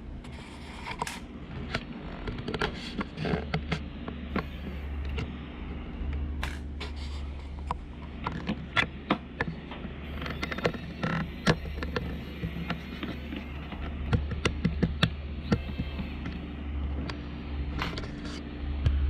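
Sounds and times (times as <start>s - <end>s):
tool clicks and taps: 10.2s - 16.4s.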